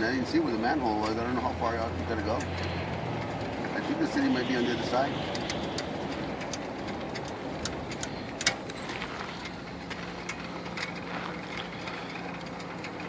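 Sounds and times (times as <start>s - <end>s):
steady low hum: 0.0s - 13.0s
clicks and rattles: 5.2s - 13.0s.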